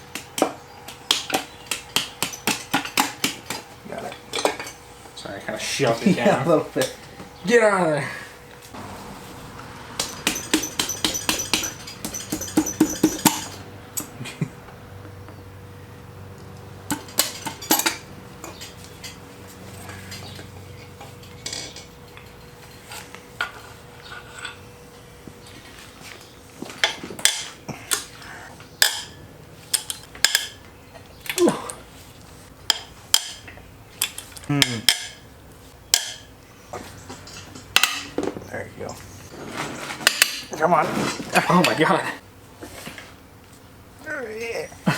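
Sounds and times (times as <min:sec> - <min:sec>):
metal tools clinking and clanking: 0:04.0 - 0:04.9, 0:10.0 - 0:14.2, 0:16.9 - 0:24.7, 0:26.6 - 0:28.2, 0:35.9 - 0:38.9
sharp ringing clicks: 0:10.0 - 0:14.1.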